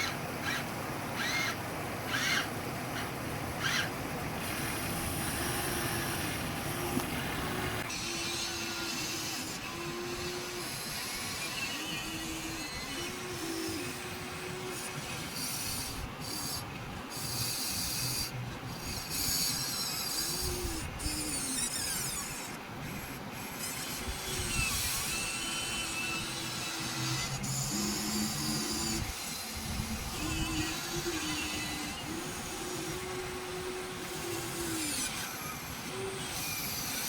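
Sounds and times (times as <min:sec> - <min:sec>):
scraping grinding rasp: 0:00.0 - 0:37.0
toy electric motors whining: 0:00.0 - 0:37.0.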